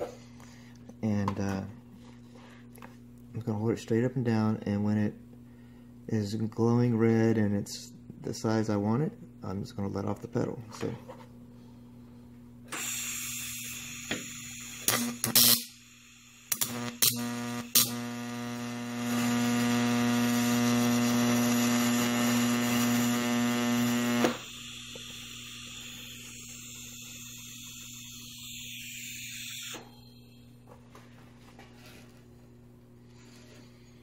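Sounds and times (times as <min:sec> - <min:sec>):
welding hiss: 0:12.7 - 0:29.9
welding arc electrical buzz: 0:12.7 - 0:30.6.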